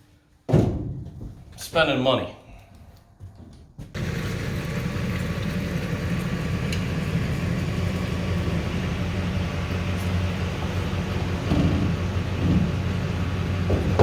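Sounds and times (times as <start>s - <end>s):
truck engine running: 3.9s - 14.0s.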